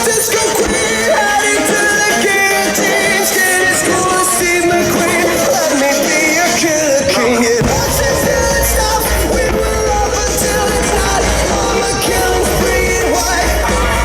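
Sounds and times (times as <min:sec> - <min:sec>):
pop song over loudspeakers: 0:00.0 - 0:14.0
steady low bass: 0:07.6 - 0:14.0.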